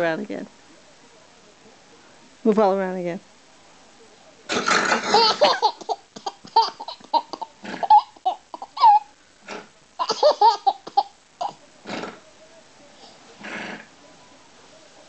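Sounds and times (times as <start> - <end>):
baby laughing: 4.9 - 9.1, 10.0 - 11.6.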